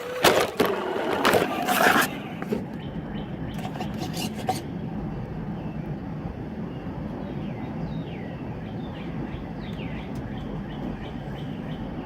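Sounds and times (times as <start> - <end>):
toy truck clattering: 0.0 - 2.6, 3.6 - 4.6
faint bird chirps: 6.6 - 12.0.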